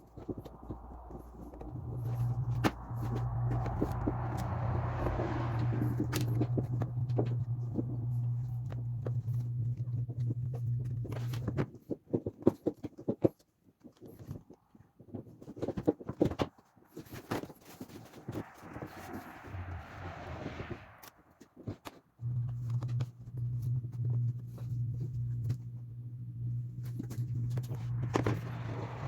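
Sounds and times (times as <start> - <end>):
steady low hum: 0.0 - 11.6, 22.2 - 29.0.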